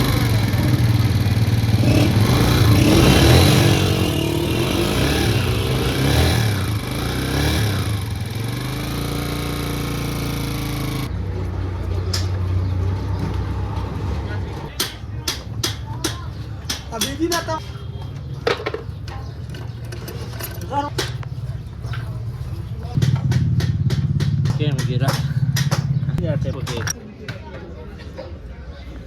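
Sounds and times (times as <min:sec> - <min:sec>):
motorcycle engine revving and idling: 0:00.0 - 0:14.7, 0:18.7 - 0:27.0.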